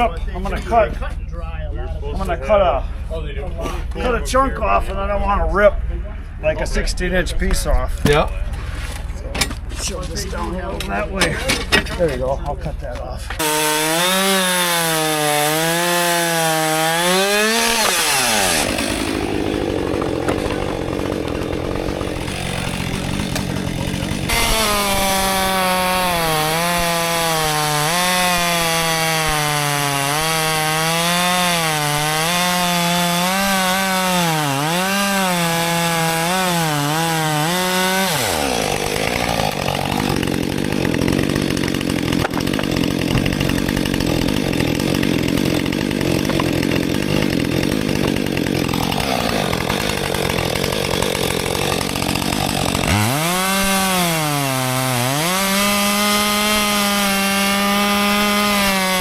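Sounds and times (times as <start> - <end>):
chainsaw cutting wood: 13.3 - 59.0.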